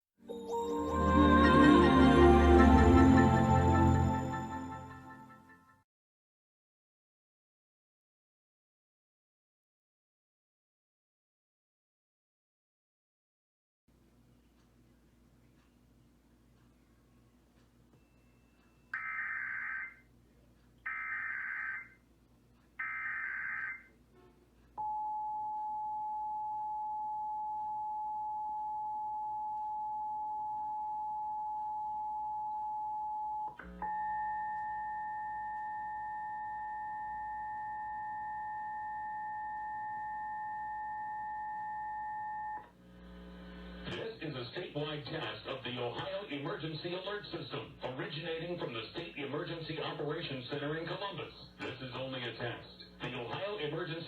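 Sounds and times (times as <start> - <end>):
higher tone: 0.2 - 5.5
steady attention tone: 0.2 - 5.5, 15.7 - 20.2.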